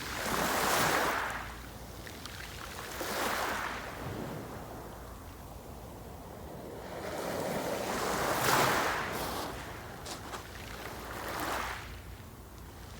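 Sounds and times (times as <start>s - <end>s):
sea waves breaking on shore: 6.9s - 12.0s.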